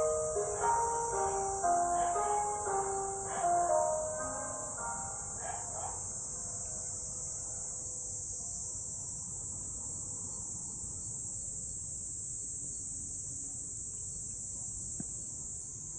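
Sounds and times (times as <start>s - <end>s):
loudspeaker chime: 0.0s - 5.8s
insects droning: 0.0s - 15.9s.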